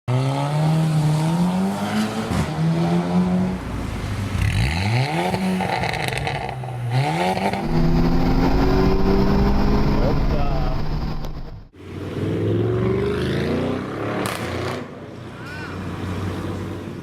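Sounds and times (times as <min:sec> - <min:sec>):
car engine accelerating: 0:07.0 - 0:12.3.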